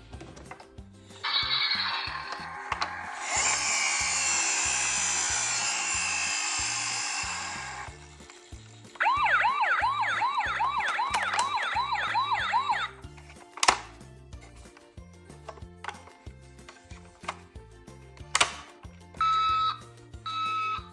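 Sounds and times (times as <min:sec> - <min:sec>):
background music: 0:00.0 - 0:20.9
toy car rolling: 0:01.1 - 0:09.0
toy siren swooping: 0:01.2 - 0:07.9, 0:09.0 - 0:13.0, 0:19.2 - 0:20.9.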